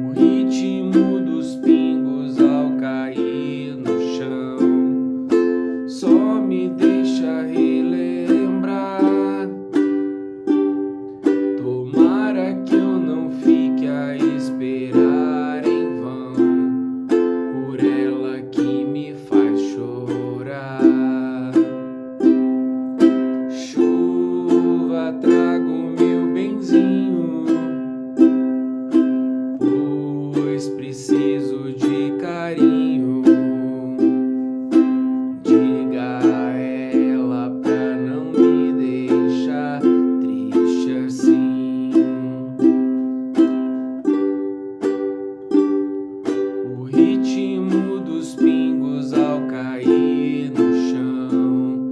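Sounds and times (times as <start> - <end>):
ukulele strumming: 0.0 - 51.9.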